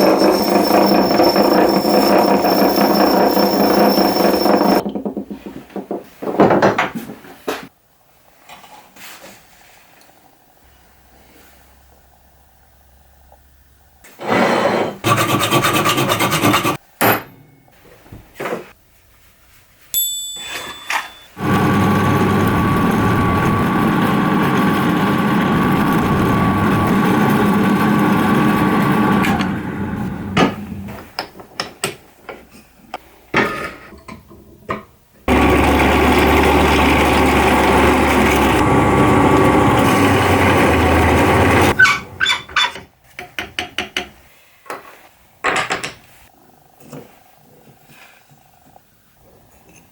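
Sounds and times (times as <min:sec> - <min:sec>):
tool rasping with whine: 0:00.0 - 0:04.8, 0:15.0 - 0:16.8, 0:21.4 - 0:30.3, 0:35.3 - 0:41.9.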